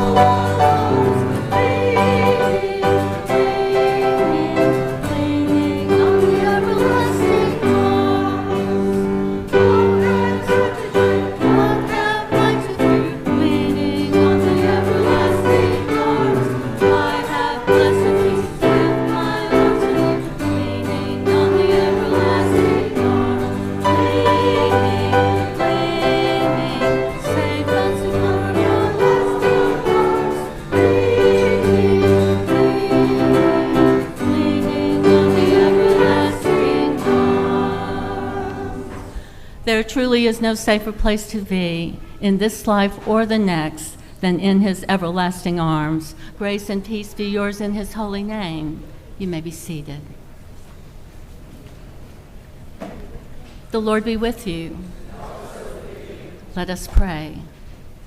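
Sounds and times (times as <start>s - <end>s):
instrumental accompaniment: 0.0s - 39.3s
congregation and choir singing hymn: 0.0s - 39.4s, 54.8s - 56.6s.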